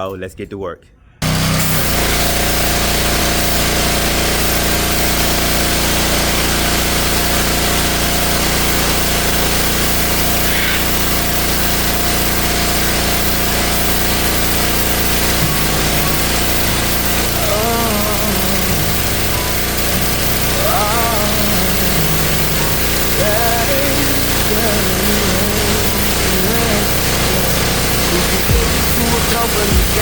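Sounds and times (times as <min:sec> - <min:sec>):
pressure washer motor hum: 0:01.2 - 0:30.0
water spray hissing: 0:01.2 - 0:30.0.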